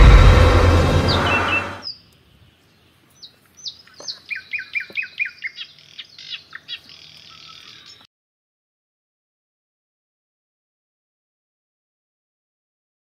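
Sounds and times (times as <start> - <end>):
songbird chirping: 1.0 - 8.1.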